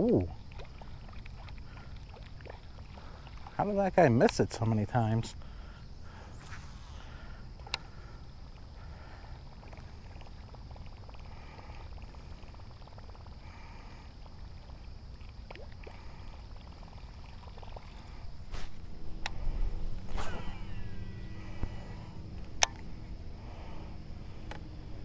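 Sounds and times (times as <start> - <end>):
flowing water: 0.0 - 24.9
wind: 0.0 - 25.0
faint ticks: 5.3 - 16.0, 21.4 - 23.0, 23.9 - 24.8
high-pitched drone: 18.8 - 23.3.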